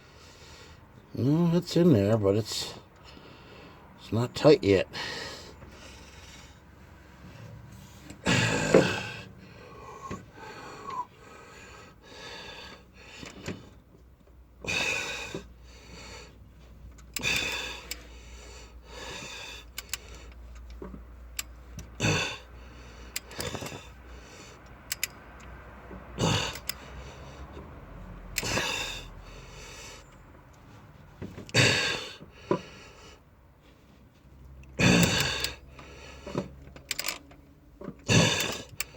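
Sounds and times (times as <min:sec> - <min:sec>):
hand wrench ratcheting: 0:16.9 - 0:18.3, 0:19.0 - 0:27.2, 0:28.3 - 0:29.1, 0:34.6 - 0:38.9.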